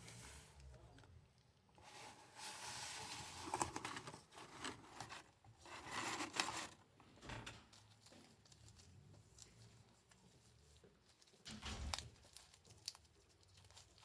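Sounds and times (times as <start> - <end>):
packaging rustling and crinkling: 1.8 - 6.8.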